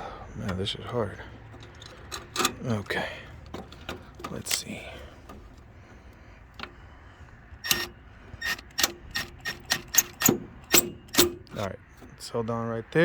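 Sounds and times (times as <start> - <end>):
parts clicking into place: 1.5 - 2.8, 7.6 - 11.7.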